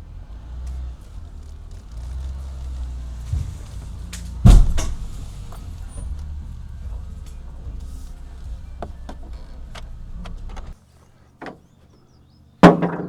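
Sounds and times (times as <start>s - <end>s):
truck engine rumbling: 0.0s - 13.0s
loud sharp thump: 1.8s - 10.8s
small knock: 2.7s - 10.8s.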